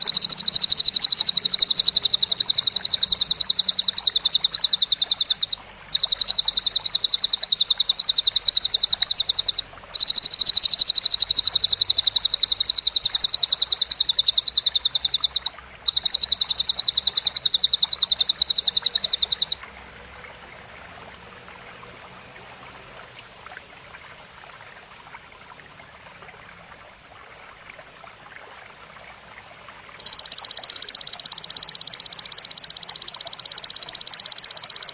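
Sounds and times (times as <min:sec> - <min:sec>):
high-pitched buzzing bird trill: 0:00.0 - 0:19.6, 0:30.0 - 0:34.9
faint background hiss: 0:00.0 - 0:34.9.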